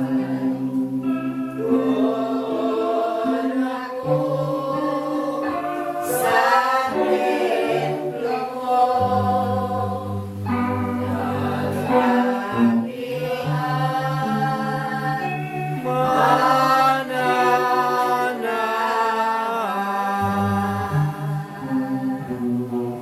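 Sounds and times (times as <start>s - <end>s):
group singing praise: 0.0s - 22.5s.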